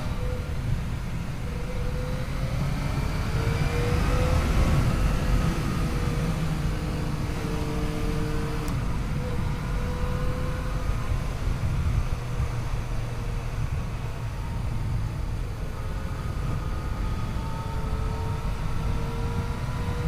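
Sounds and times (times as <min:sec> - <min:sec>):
wind rush over microphone: 0:00.0 - 0:20.0.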